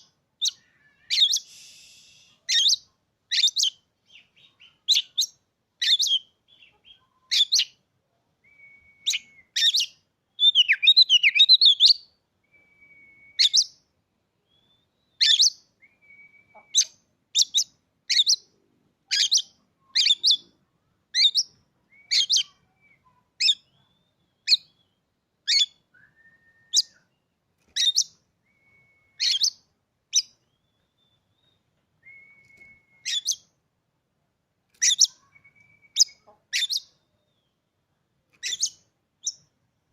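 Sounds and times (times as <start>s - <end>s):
faint whistled notes: 8.4s - 9.6s, 12.4s - 13.6s, 25.9s - 27.2s, 28.4s - 29.4s, 30.4s - 33.3s, 35.1s - 36.2s.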